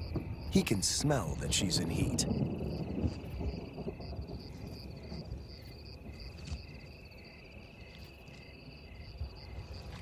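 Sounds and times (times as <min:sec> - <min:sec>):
insects chirping: 0:00.0 - 0:10.0.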